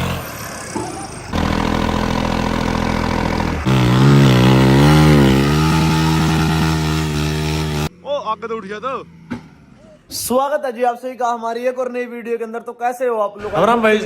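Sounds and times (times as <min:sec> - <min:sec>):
tractor engine revving: 0:00.0 - 0:10.0.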